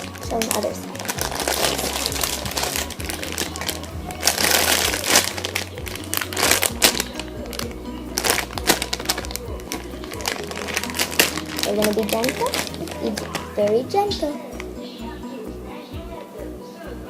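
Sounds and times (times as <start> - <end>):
foam toy crinkling and rustling: 0.0 - 14.3
background music with bass line: 0.0 - 17.0.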